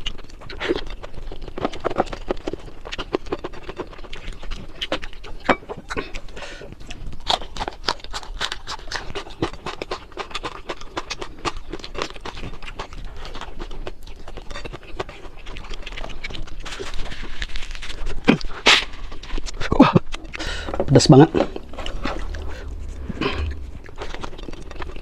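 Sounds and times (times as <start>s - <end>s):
person chewing crunchy food: 0.0s - 25.0s.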